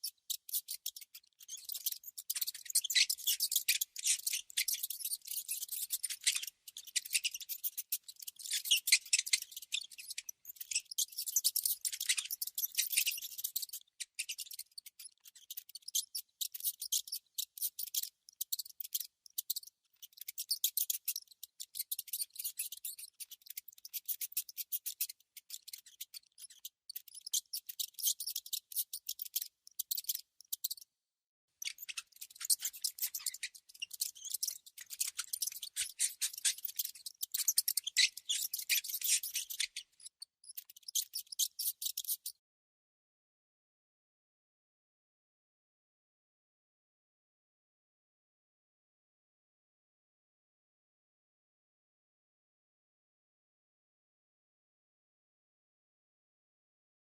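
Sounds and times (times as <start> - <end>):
high-pitched scratching and clicking: 0.0 - 30.8, 31.6 - 42.4.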